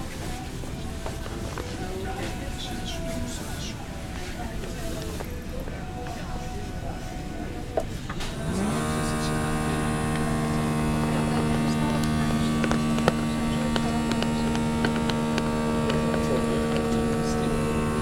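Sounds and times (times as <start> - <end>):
machine humming: 5.7 - 18.0.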